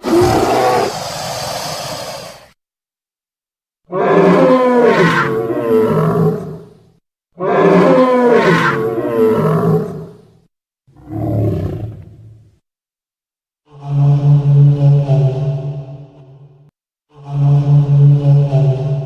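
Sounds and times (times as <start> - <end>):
dinosaur roar: 0.0 - 2.5, 3.9 - 6.6, 11.0 - 12.3.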